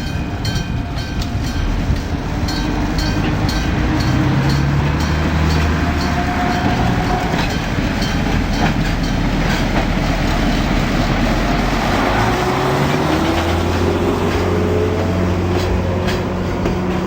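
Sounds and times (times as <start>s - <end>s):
freight train rumbling: 0.0s - 17.0s
wheels clicking over rail joints: 0.0s - 17.0s.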